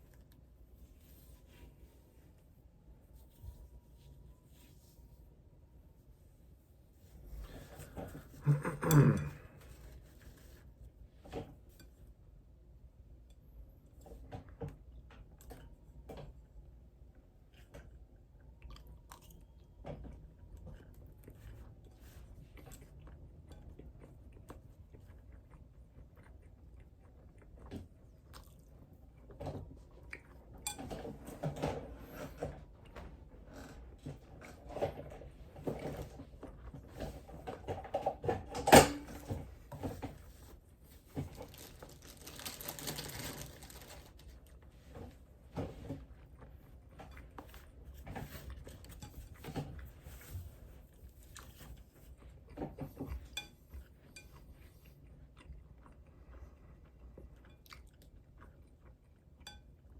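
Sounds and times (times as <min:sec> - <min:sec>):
person chewing food: 0:17.5 - 0:30.8, 0:46.0 - 0:59.9.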